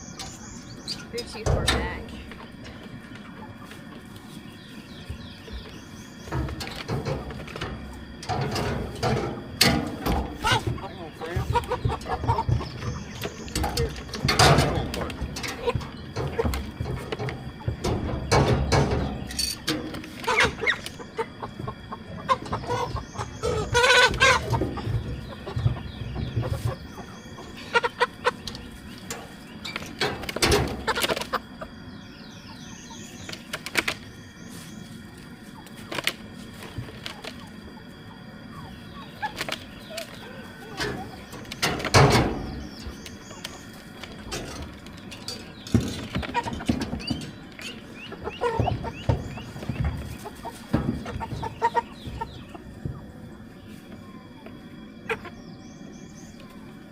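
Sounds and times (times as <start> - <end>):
birds chirping: 0.0 - 56.9
chickens clucking and squawking: 0.0 - 56.9
knocks and thumps: 6.3 - 20.6, 44.2 - 53.1.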